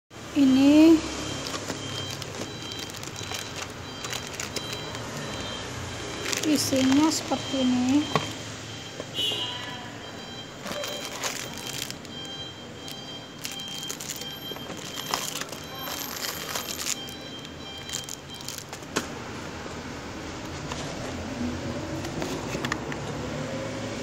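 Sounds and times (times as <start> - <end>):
plastic packaging crinkling: 1.2 - 8.0, 10.6 - 19.0.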